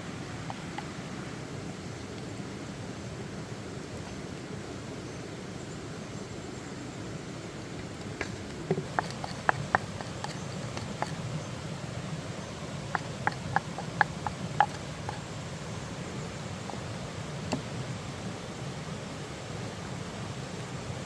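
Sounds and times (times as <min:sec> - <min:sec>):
stream water rushing: 0:08.7 - 0:21.0
sharp clicks and pops: 0:08.8 - 0:11.2, 0:12.9 - 0:15.3.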